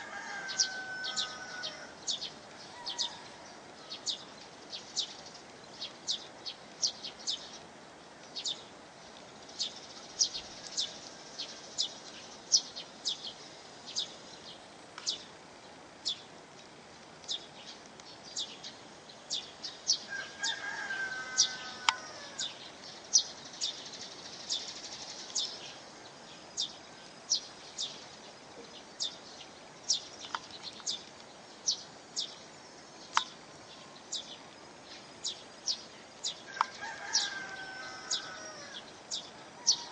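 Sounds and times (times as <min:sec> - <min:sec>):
lower bird call: 0:00.0 - 0:07.6, 0:17.3 - 0:25.9, 0:26.6 - 0:39.9
bird chirping: 0:00.0 - 0:15.4, 0:17.2 - 0:39.9.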